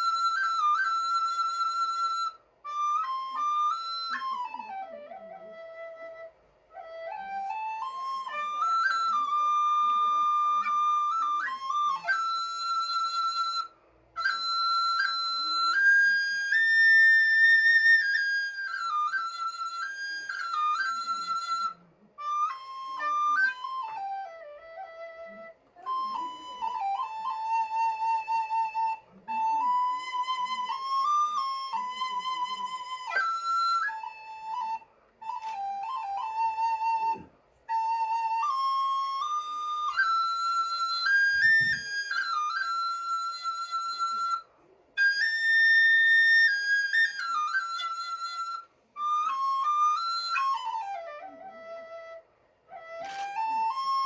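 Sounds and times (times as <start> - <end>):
recorder playing slow melody: 0.0 - 54.0.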